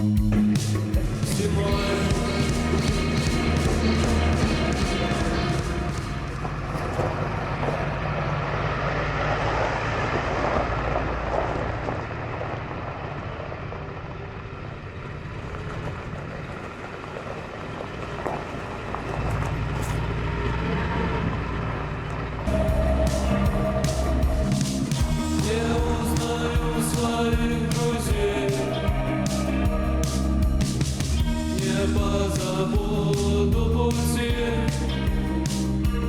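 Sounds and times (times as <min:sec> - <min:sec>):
vehicle engine rumbling: 0:00.0 - 0:36.0.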